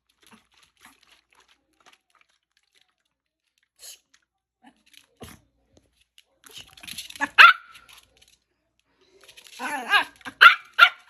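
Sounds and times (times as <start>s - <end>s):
dog chewing and crunching: 0.0s - 5.5s.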